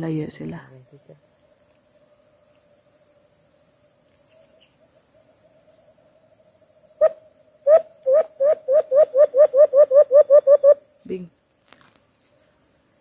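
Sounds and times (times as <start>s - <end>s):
faint insect drone: 0.0s - 13.0s
imitated dove hooting: 7.0s - 10.8s.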